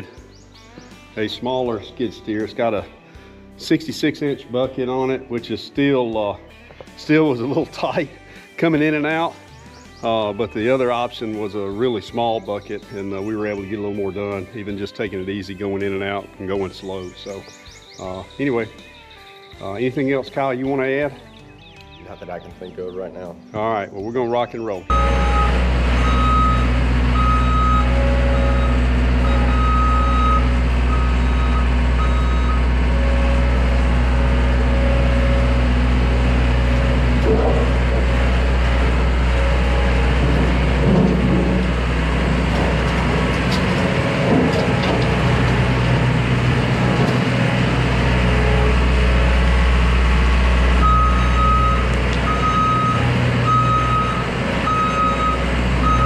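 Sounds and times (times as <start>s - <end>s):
backup alarm beeping: 24.9s - 35.6s, 50.8s - 56.0s
skid steer engine running: 24.9s - 56.0s.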